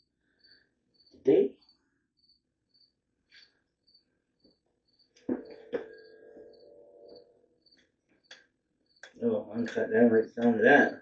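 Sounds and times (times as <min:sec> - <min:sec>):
crickets chirping: 0:00.3 - 0:01.2, 0:02.1 - 0:09.7
sharp metal clanks: 0:05.2 - 0:07.6
metallic ringing tone: 0:05.2 - 0:07.8.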